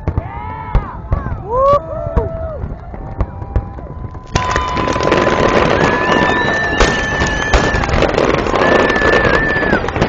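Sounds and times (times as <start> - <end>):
fireworks bangs: 0.0 - 10.0
fireworks crackling: 0.0 - 10.0.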